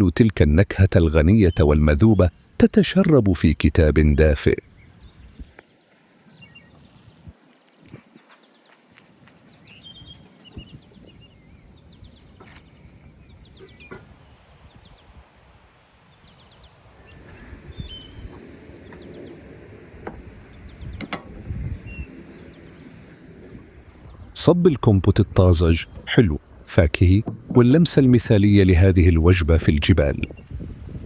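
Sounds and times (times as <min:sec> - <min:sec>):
birds chirping: 0:00.0 - 0:31.0
light knocks and clicks: 0:27.2 - 0:27.8.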